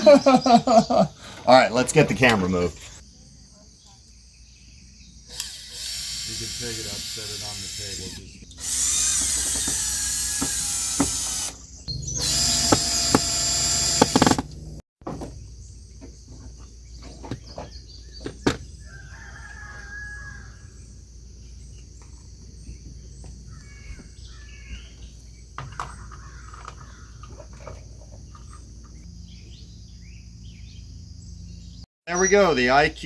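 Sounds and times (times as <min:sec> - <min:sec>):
bird calls: 0:00.0 - 0:01.5, 0:21.5 - 0:33.0
insect drone: 0:03.0 - 0:14.4
power drill running: 0:05.3 - 0:14.8
rooster crowing: 0:18.8 - 0:20.8.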